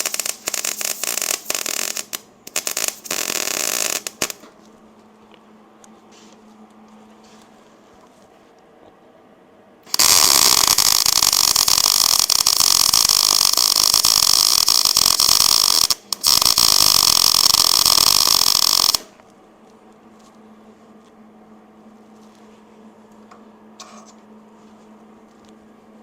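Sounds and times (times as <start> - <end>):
welder arc crackling: 0.0 - 4.6, 9.9 - 19.2.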